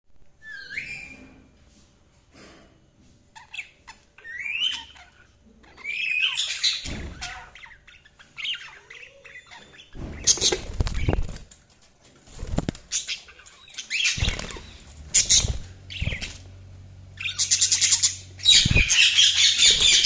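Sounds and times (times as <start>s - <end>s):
budgerigars chirping and squawking: 3.3s - 11.5s, 12.4s - 20.0s.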